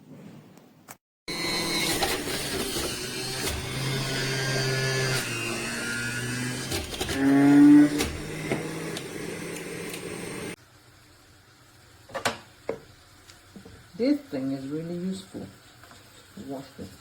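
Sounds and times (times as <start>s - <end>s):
electric juicer motor running: 1.3s - 10.6s.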